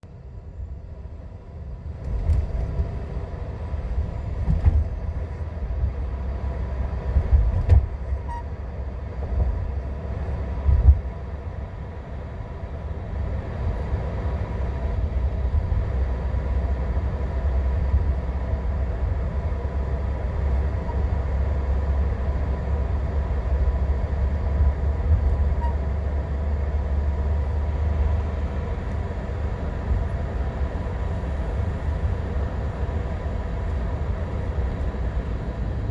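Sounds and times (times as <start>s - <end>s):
car rolling rumble: 0.1s - 35.9s
faint steady whine: 9.7s - 35.9s.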